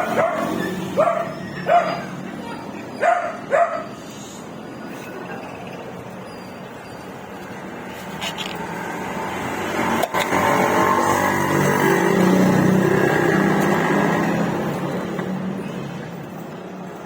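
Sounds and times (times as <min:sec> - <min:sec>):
vehicle engine passing by: 0:07.8 - 0:16.7.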